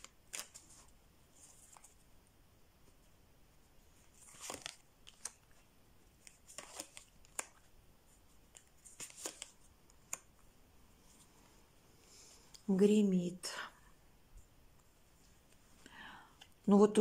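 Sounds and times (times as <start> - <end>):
papery card rustles: 0.0 - 2.0, 3.9 - 10.4.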